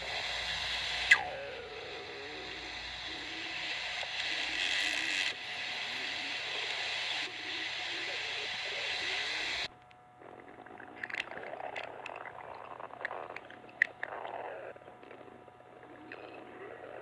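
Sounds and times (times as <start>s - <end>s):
loud hissing: 0.0s - 17.0s
stomach growling: 1.0s - 17.0s
small clicks and pops: 9.7s - 16.4s.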